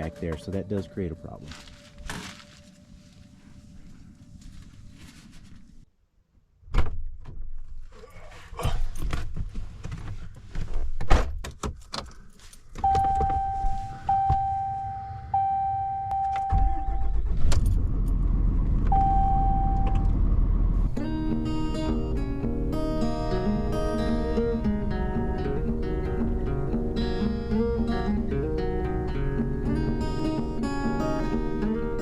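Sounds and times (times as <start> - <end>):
electronic warning chime: 12.8 - 17.0, 19.0 - 20.0
low engine rumble: 13.1 - 32.0.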